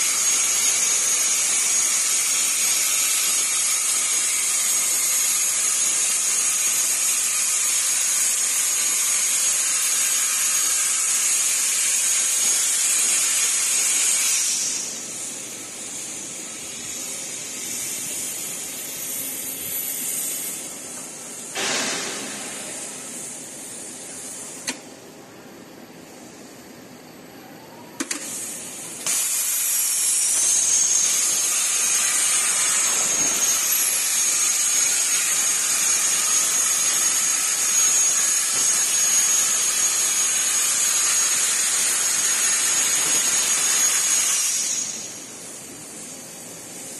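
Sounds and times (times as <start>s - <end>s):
plasma torch hissing: 0.0s - 24.8s, 28.0s - 46.9s
quieter hiss: 0.1s - 46.9s
sharp click: 24.6s - 24.9s.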